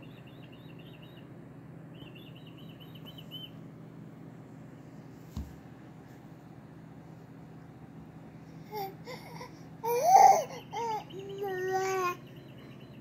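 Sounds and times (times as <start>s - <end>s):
bird song trills from tv: 0.0s - 1.3s, 1.9s - 3.6s, 10.6s - 13.0s
steady low hum: 0.0s - 13.0s.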